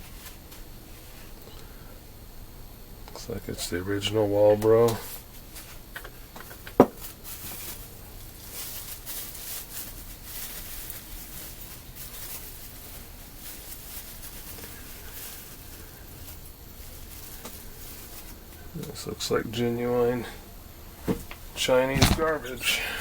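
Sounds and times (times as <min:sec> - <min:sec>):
small parts and packaging rustling: 0:04.9 - 0:18.4, 0:21.6 - 0:22.6.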